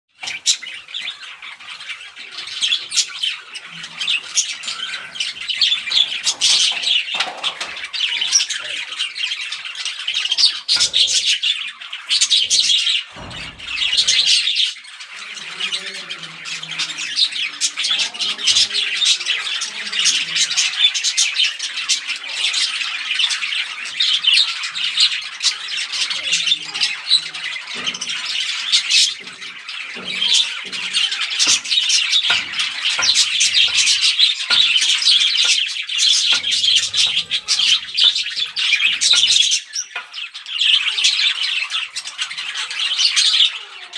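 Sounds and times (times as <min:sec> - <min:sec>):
budgerigars squawking: 0:00.2 - 0:43.8.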